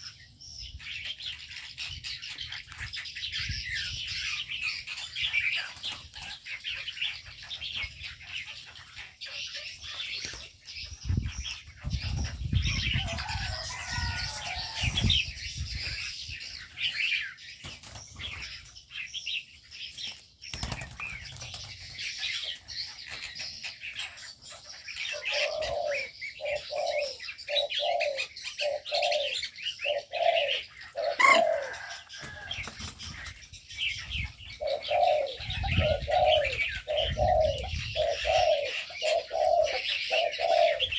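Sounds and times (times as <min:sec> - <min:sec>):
small birds chirping: 0:00.0 - 0:40.9
doves cooing: 0:11.8 - 0:16.1, 0:24.9 - 0:40.9
wings flapping: 0:20.5 - 0:21.9.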